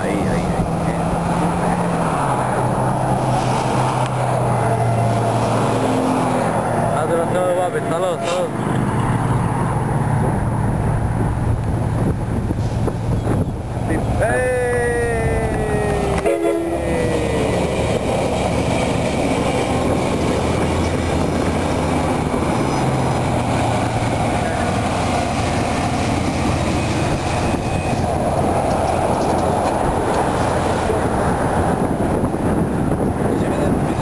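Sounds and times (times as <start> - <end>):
locomotive rumble: 0.0 - 34.0
train wheel and rail noise: 0.0 - 34.0
train horn: 16.0 - 17.7.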